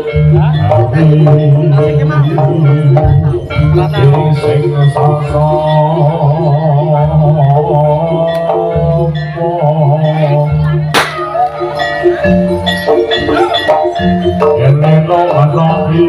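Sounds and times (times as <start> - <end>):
gamelan music: 0.0 - 16.0
sharp crash: 10.9 - 11.3.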